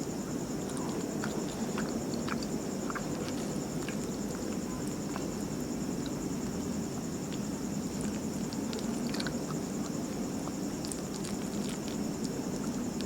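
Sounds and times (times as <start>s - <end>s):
high pulsing insect chirping: 0.0s - 13.0s
person chewing: 0.7s - 5.4s, 7.3s - 13.0s.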